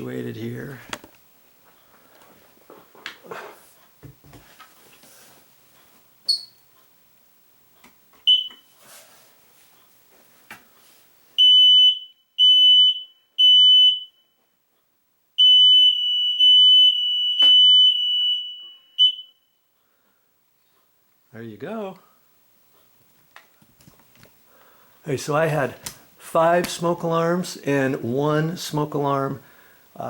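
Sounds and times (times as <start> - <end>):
smoke alarm chirps and beeps: 6.3 - 6.7, 8.3 - 8.7, 11.4 - 14.4, 15.4 - 19.6.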